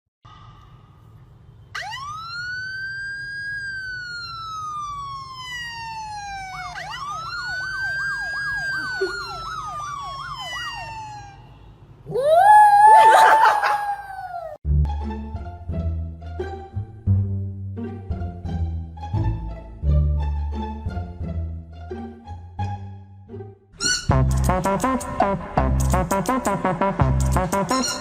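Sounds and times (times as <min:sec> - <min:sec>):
siren wailing: 0:01.7 - 0:14.6
siren warbling yelp: 0:01.8 - 0:14.6.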